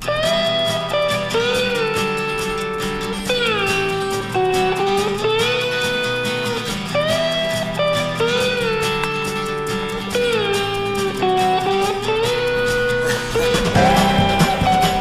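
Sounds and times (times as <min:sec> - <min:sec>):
sliding guitar melody: 0:00.0 - 0:15.0
low steady accompaniment: 0:13.4 - 0:15.0.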